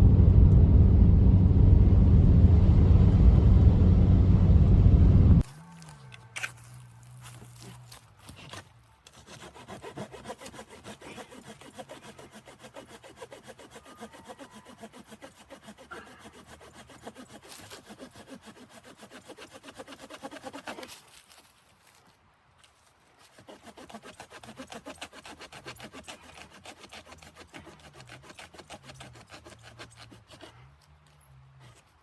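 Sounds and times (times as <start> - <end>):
hand saw cutting wood: 5.8 - 21.3, 23.2 - 32.0.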